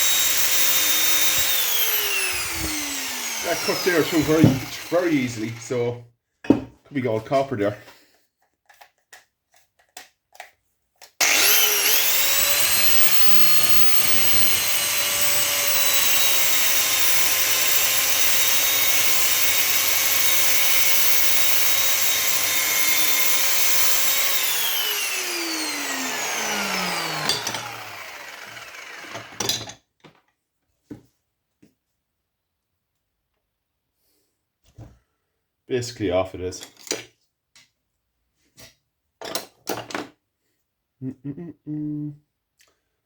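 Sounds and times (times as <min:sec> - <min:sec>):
electric cutting tool whine: 0:00.0 - 0:05.8, 0:11.2 - 0:29.5.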